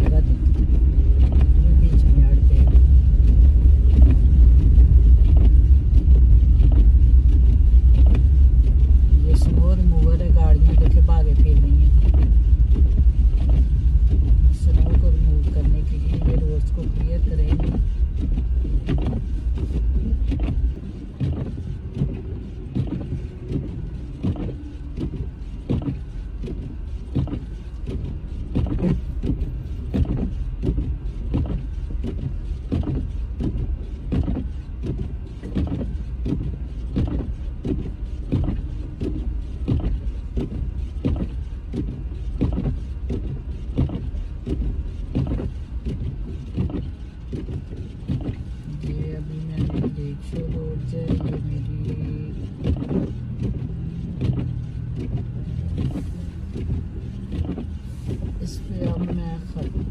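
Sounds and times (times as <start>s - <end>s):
car engine and tyres rumbling: 0.0s - 59.9s
short regular thumps: 0.0s - 59.9s.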